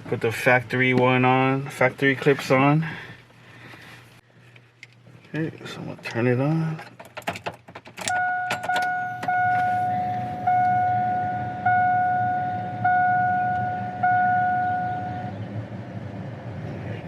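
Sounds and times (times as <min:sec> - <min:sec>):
ignition key clicks: 0:07.0 - 0:09.7
dashboard warning chime: 0:08.1 - 0:15.4.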